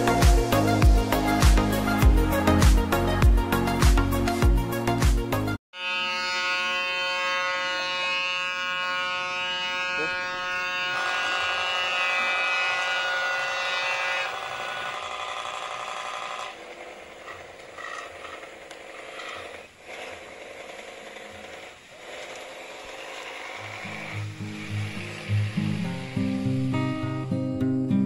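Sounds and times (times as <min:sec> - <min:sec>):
mechanical buzzing: 0:05.8 - 0:27.5
rough hiss: 0:21.1 - 0:27.5.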